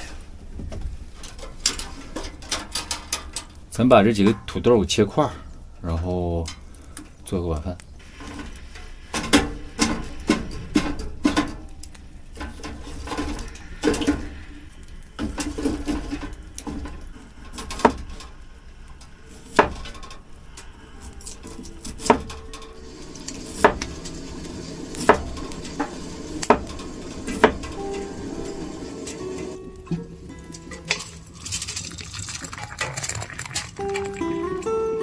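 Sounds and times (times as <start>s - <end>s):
kitchenware clinking: 19.0s - 35.0s.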